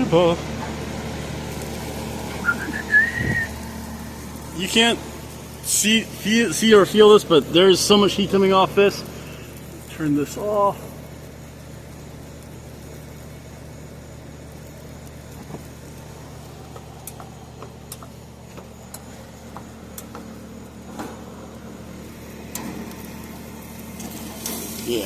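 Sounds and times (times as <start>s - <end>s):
low mechanical hum: 0.0s - 25.0s
light clicks and taps: 16.7s - 20.3s.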